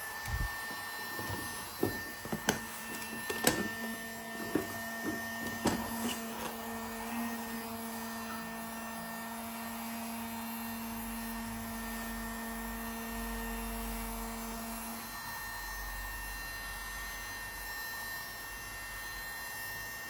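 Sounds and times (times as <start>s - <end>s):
small device humming: 0.0s - 9.3s.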